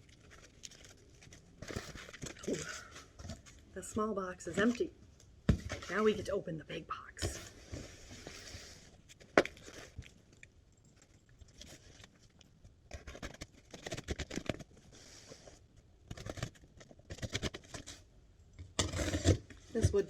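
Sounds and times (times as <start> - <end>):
cardboard crinkling: 0.0 - 4.9, 7.2 - 18.0
packing tape tearing: 12.9 - 14.7, 18.8 - 19.5.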